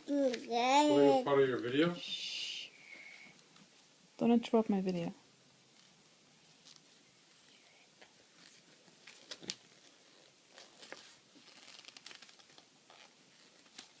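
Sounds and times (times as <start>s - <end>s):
faint rustles: 5.7s - 14.0s.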